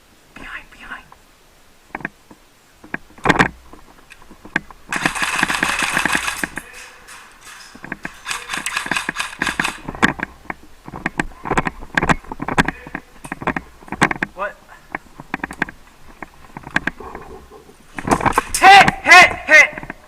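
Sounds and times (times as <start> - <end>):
sharp knocks and clicks: 1.9 - 19.0
airsoft guns firing bursts: 4.9 - 7.0, 8.1 - 9.9.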